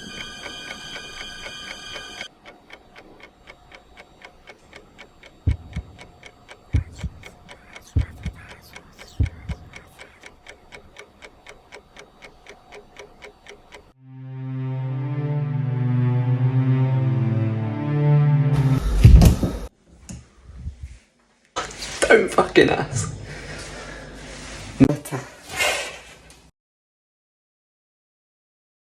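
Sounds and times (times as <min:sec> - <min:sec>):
clock ticking: 0:00.0 - 0:14.0
heavy low double thumps: 0:05.5 - 0:09.9.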